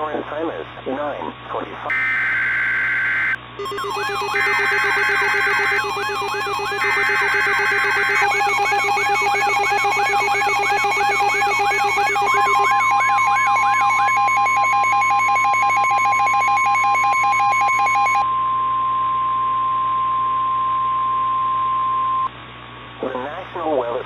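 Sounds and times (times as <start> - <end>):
rising chirps and pulsed beeping: 1.9 - 18.3
steady alarm tone: 1.9 - 18.4.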